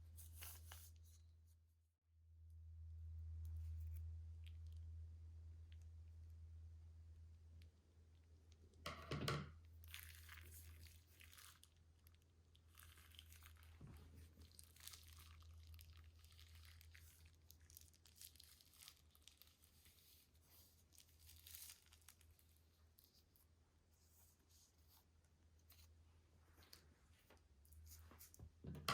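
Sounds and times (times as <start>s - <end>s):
steady low hum: 2.3s - 8.8s
plastic bags crinkling: 9.8s - 11.8s, 12.6s - 22.7s.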